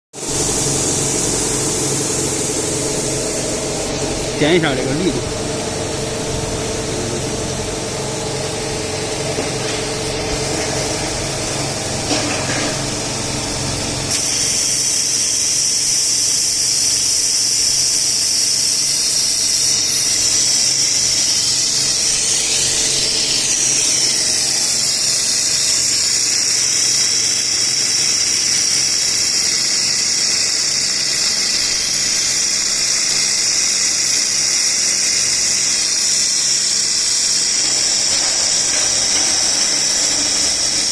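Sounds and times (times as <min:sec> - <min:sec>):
machine hum: 0:00.2 - 0:14.5, 0:37.2 - 0:40.9
loud high hiss: 0:00.2 - 0:40.9.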